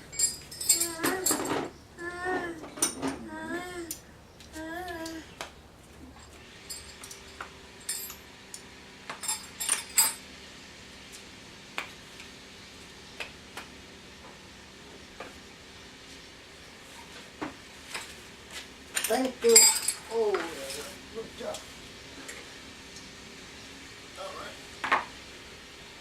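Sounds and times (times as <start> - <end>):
metal tools clinking: 0.0 - 1.7, 6.6 - 8.2, 9.2 - 10.2, 19.0 - 21.0
faint steady hum: 0.0 - 26.0.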